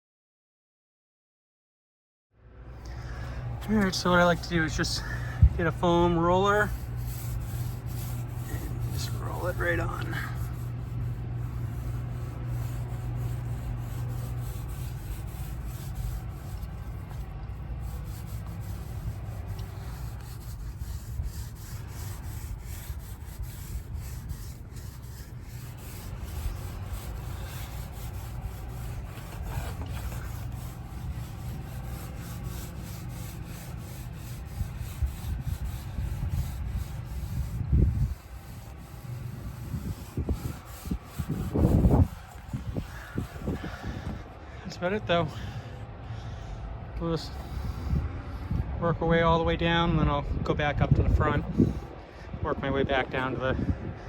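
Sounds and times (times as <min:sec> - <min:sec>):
foam roller rubbing on wood deck: 0:03.6 - 0:44.3.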